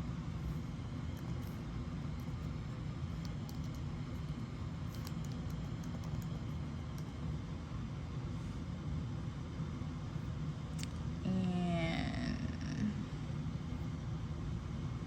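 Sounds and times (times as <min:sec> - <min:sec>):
steady low hum: 0:00.0 - 0:15.0
laptop keyboard typing: 0:01.1 - 0:07.2.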